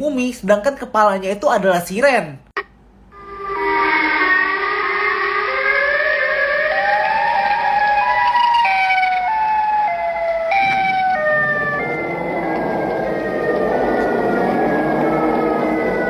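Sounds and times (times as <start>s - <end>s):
siren tones wailing: 3.1s - 16.0s
rough noisy rumble: 10.3s - 16.0s.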